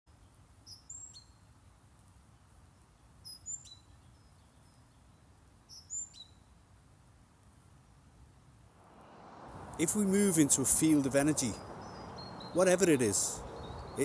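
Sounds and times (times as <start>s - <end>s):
songbird singing high notes: 9.6s - 14.0s.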